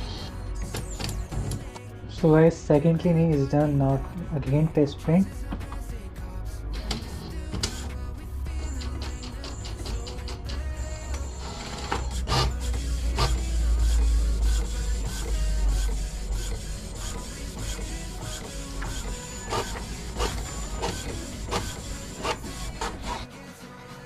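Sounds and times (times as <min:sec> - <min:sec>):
printer motors running: 0:11.2 - 0:23.2
print head carriage clicking: 0:16.4 - 0:23.2.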